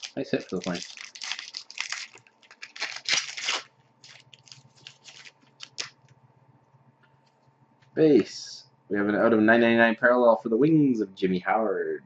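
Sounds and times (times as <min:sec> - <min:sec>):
wrapper tearing and crinkling: 0:00.0 - 0:06.0.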